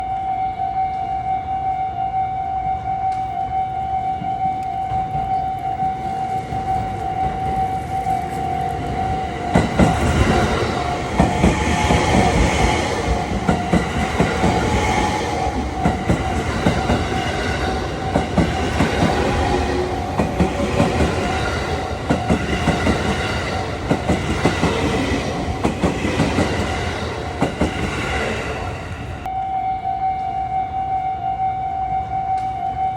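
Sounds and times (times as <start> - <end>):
level crossing warning alarm: 0.0 - 32.9
train wheels clattering over rail joints: 8.1 - 29.2.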